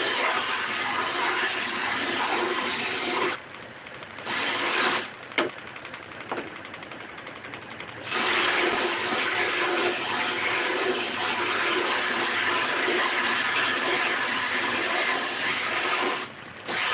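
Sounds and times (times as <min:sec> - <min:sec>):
high-pressure jet hissing: 0:08.1 - 0:16.9.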